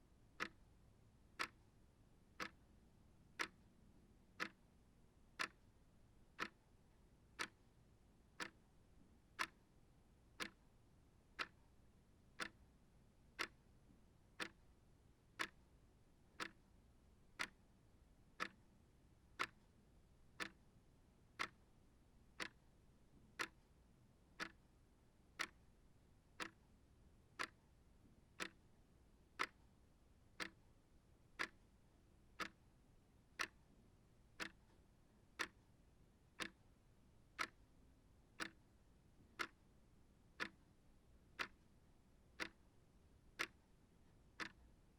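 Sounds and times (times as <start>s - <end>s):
clock ticking: 1.4s - 1.6s, 2.4s - 2.6s, 3.4s - 3.6s, 4.4s - 4.6s, 5.4s - 5.6s, 6.4s - 6.6s, 7.4s - 7.6s, 8.4s - 8.6s, 9.4s - 9.6s, 10.4s - 10.6s, 11.4s - 11.6s, 12.4s - 12.6s, 13.4s - 13.6s, 14.4s - 14.6s, 15.4s - 15.6s, 16.4s - 16.6s, 17.4s - 17.6s, 18.4s - 18.6s, 19.4s - 19.6s, 20.4s - 20.6s, 21.4s - 21.6s, 22.4s - 22.6s, 23.4s - 23.6s, 24.4s - 24.6s, 25.4s - 25.7s, 26.4s - 26.6s, 27.4s - 27.6s, 28.4s - 28.7s, 29.4s - 29.6s, 30.4s - 30.6s, 31.4s - 31.6s, 32.4s - 32.6s, 33.4s - 33.6s, 34.4s - 34.8s, 35.4s - 35.6s, 36.4s - 36.7s, 37.4s - 37.6s, 38.4s - 38.7s, 39.4s - 39.6s, 40.4s - 40.7s, 41.4s - 41.6s, 42.4s - 42.7s, 43.4s - 43.7s, 44.4s - 44.8s.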